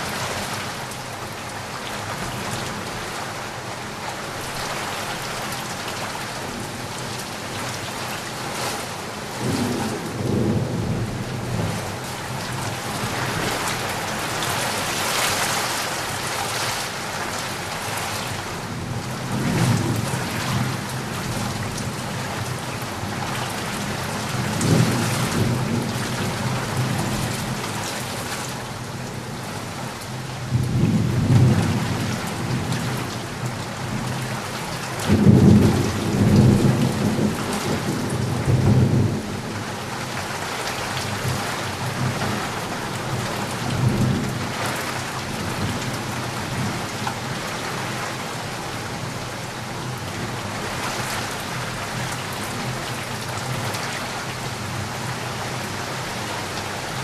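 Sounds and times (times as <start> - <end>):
heavy rain: 0.0 - 57.0.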